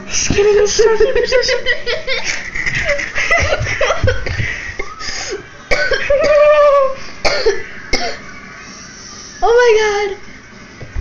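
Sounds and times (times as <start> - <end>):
people laughing hard: 0.6 - 5.4.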